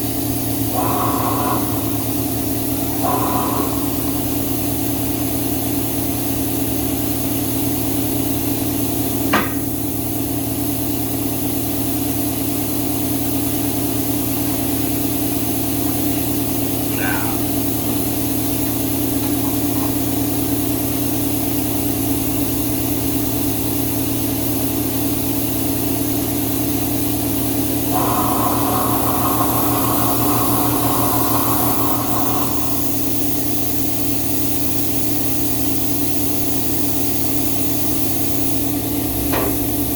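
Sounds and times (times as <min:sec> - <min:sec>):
motor humming: 0:00.6 - 0:05.6, 0:27.9 - 0:34.1.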